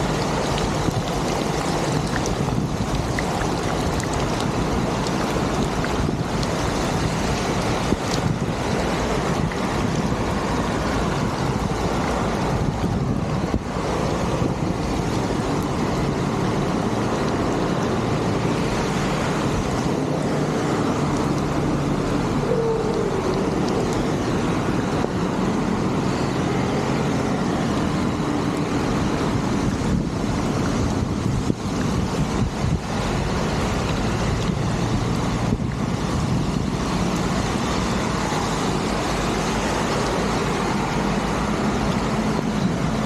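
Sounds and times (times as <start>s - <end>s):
loud rush of flowing water: 0.0s - 43.0s.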